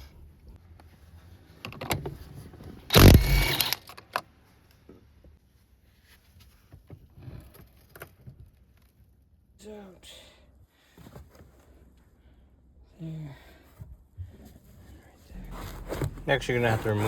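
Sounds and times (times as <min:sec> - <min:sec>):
loud scraping rush: 0:15.3 - 0:17.0.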